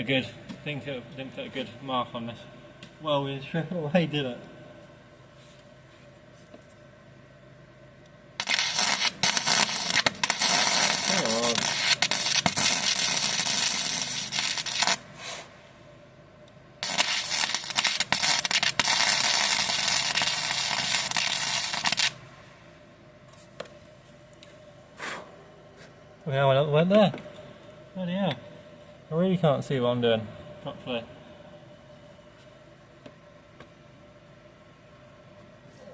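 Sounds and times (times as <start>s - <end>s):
welder arc crackling and spitting: 8.4s - 15.5s, 16.8s - 22.2s.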